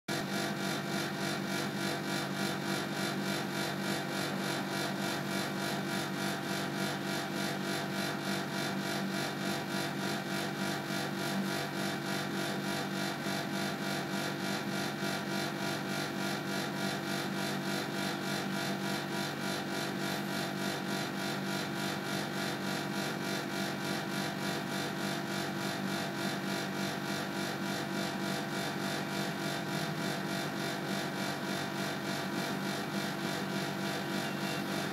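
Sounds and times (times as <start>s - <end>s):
air conditioner droning hum: 27.0s - 34.9s.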